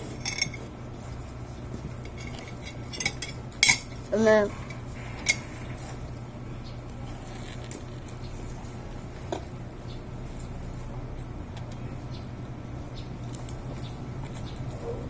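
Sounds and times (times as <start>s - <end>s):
eating sounds: 3.9s - 9.8s.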